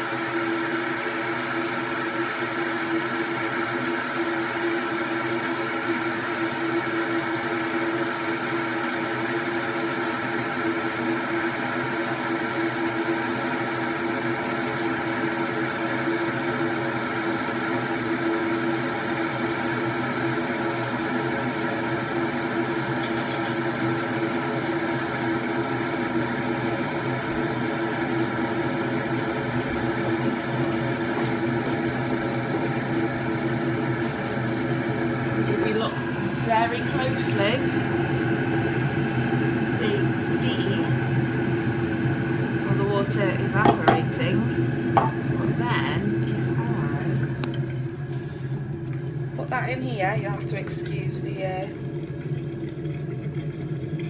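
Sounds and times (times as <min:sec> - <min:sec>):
electric kettle humming and hissing: 0:00.0 - 0:54.0.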